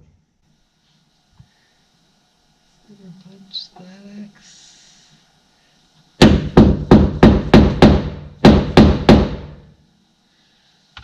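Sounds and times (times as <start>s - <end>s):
hammer striking metal punch: 6.2s - 9.6s.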